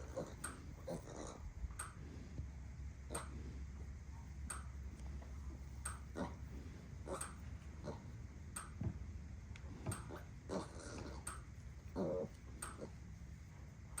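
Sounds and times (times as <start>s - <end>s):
piglets grunting: 0.0s - 1.5s, 6.1s - 8.2s, 10.1s - 13.0s.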